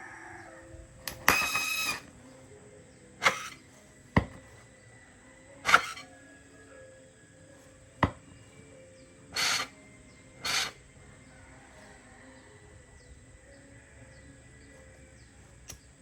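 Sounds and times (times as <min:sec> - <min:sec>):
short bursts of hiss: 0:09.4 - 0:09.7, 0:10.4 - 0:10.8.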